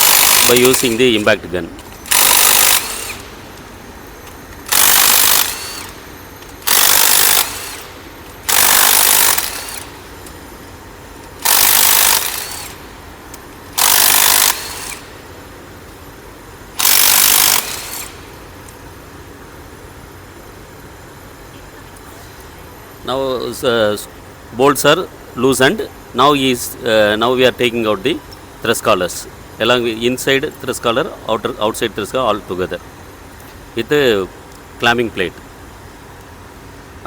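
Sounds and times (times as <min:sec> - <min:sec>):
impact gun bursts: 0:00.0 - 0:01.3, 0:02.0 - 0:03.4, 0:04.6 - 0:06.0, 0:06.6 - 0:10.0, 0:11.4 - 0:13.0, 0:13.8 - 0:15.3, 0:16.8 - 0:18.3.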